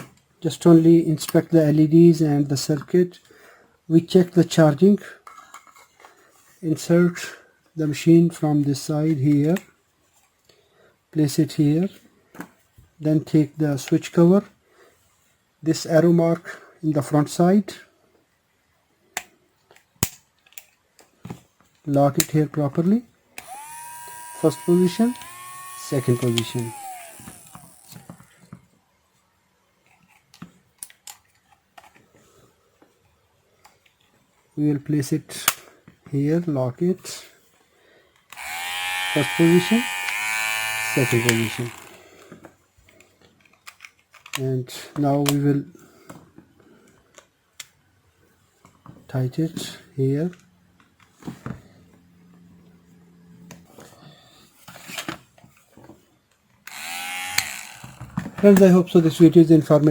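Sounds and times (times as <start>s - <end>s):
hair trimmer motor whine: 23.4s - 28.4s, 38.3s - 42.1s, 56.7s - 58.2s.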